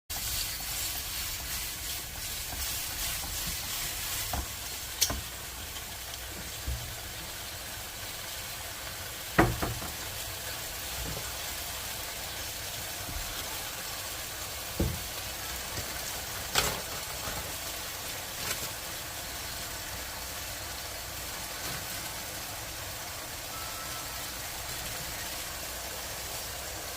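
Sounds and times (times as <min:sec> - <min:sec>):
zucchini sizzling in a pan: 0:00.1 - 0:26.9
utensil knocking against pan: 0:09.4 - 0:10.0.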